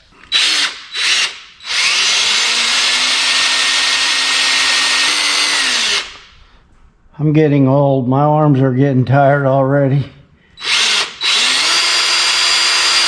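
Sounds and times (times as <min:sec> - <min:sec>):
power drill drilling metal: 0:00.3 - 0:06.3, 0:10.6 - 0:13.0.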